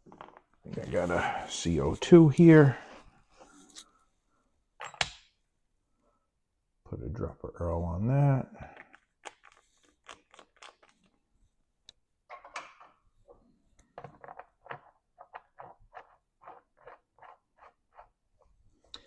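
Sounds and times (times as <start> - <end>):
clicks and scrapes of handling: 8.8 - 11.2, 12.6 - 19.0.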